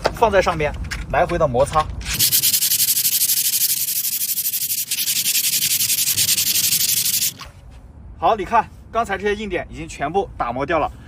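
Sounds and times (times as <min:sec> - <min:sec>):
brake pad rubbing on sandpaper: 0:02.1 - 0:07.8.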